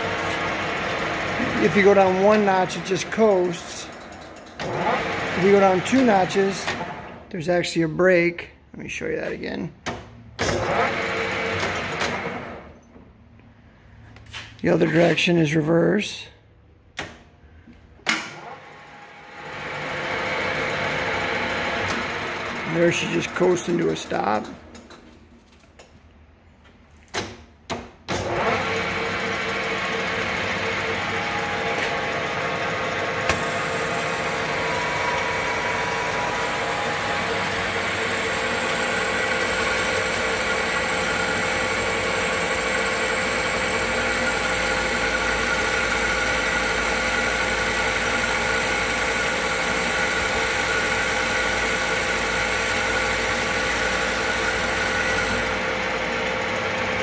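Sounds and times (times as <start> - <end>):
lathe motor and gears running: 0.0 - 7.3, 10.4 - 12.8, 18.2 - 25.6, 28.1 - 57.0
gear whine: 28.2 - 57.0
lathe clunks: 29.8 - 41.0.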